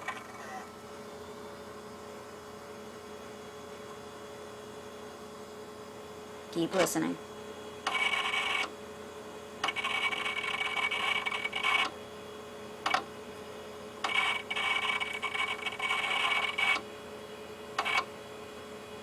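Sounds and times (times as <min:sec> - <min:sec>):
hard drive buzzing whine: 0:00.0 - 0:19.0
computer steady hum: 0:06.6 - 0:08.9, 0:09.5 - 0:17.1, 0:17.8 - 0:18.2
hard drive clicking: 0:07.9 - 0:08.8, 0:09.6 - 0:12.0, 0:12.8 - 0:13.1, 0:14.0 - 0:16.9, 0:17.8 - 0:18.1.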